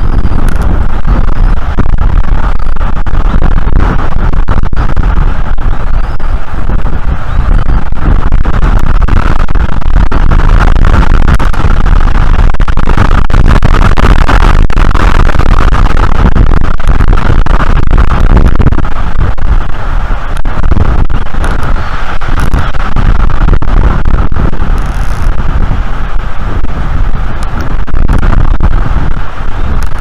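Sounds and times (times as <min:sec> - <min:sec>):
strong wind on microphone: 0:00.0 - 0:30.0.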